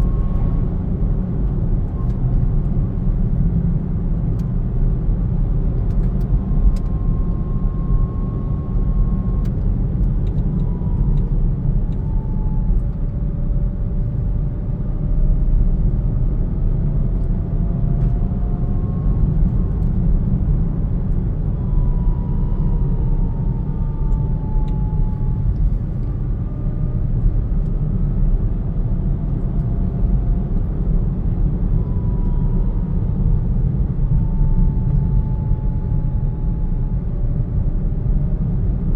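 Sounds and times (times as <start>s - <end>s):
car low rumble: 0.0s - 38.9s
faint whining tones: 17.2s - 27.7s, 29.4s - 38.0s.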